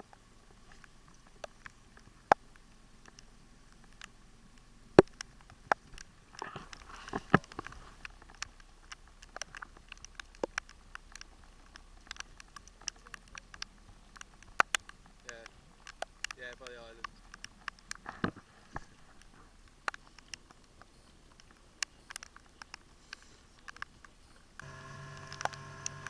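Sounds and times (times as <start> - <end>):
sharp clicks and knocks: 0.0 - 26.0.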